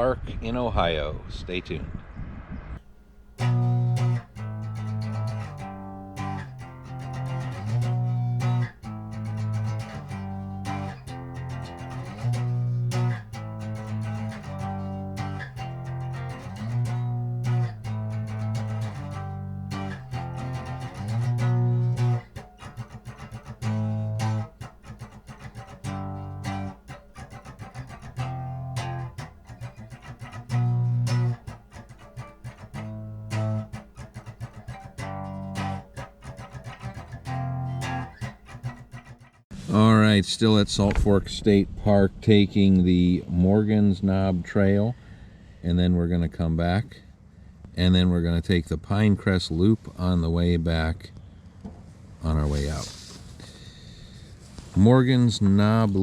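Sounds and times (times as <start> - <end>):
guitar instrumental music with bass: 2.8 - 39.7.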